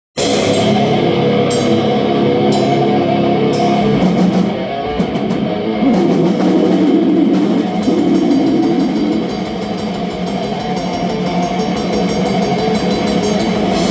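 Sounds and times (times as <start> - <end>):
drum kit: 0.2 - 13.9
heavy distorted guitars: 0.2 - 13.9
cymbal crashes: 5.8 - 13.9.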